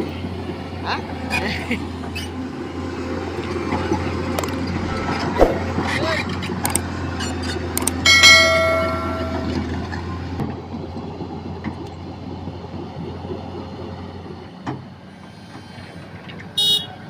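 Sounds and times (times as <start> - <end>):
vehicle horn: 16.6 - 16.9.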